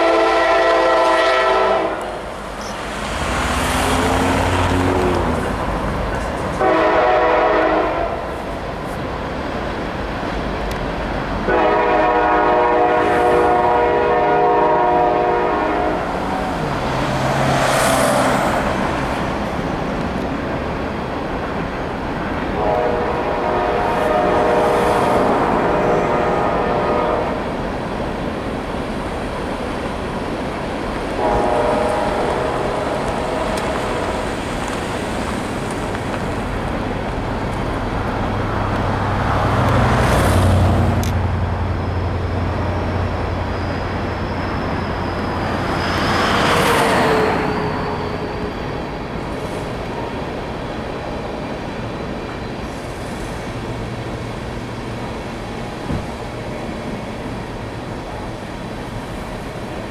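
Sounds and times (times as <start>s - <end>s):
train air horn blasts: 0.0s - 2.2s, 6.6s - 8.3s, 11.5s - 16.6s, 22.6s - 27.5s, 31.2s - 34.3s
locomotive and rail rumble: 0.0s - 59.9s.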